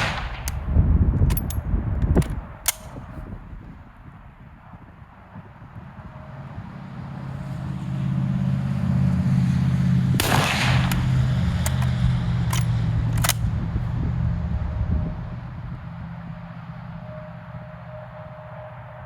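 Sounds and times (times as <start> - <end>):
sharp cracks: 0.0 - 3.1, 10.2 - 13.6
low engine rumble: 0.0 - 19.0.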